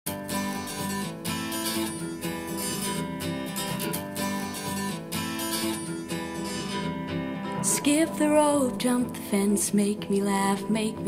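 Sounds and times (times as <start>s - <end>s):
strummed acoustic guitar: 0.1s - 11.0s
person singing: 7.5s - 11.0s.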